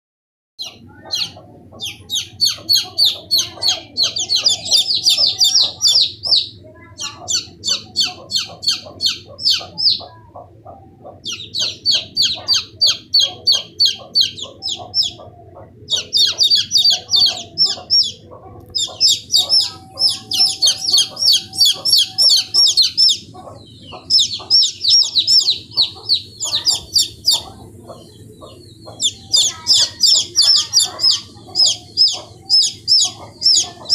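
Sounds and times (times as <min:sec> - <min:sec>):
fainter lower calls: 0:00.6 - 0:10.2, 0:11.1 - 0:33.9
chicks peeping: 0:00.6 - 0:33.9.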